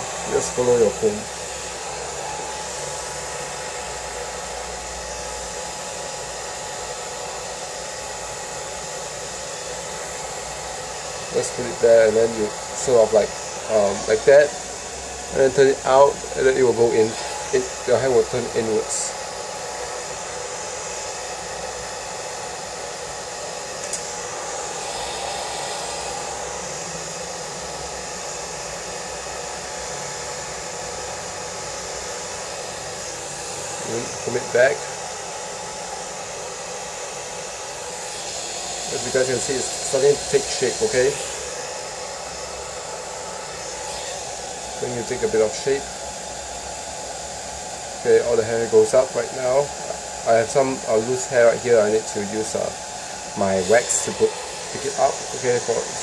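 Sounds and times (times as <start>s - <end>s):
hair dryer blowing air: 0.0s - 56.0s
sharp click: 23.8s - 24.1s.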